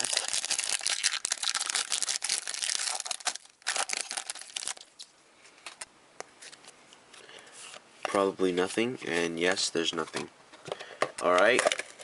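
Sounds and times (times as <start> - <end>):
wrapper tearing and crinkling: 0.0 - 5.1.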